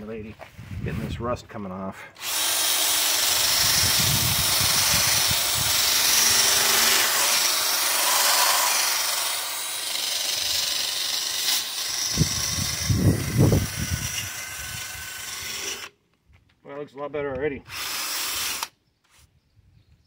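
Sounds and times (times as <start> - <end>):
drill wire wheel scrubbing rust: 2.2 - 15.9, 17.7 - 18.7.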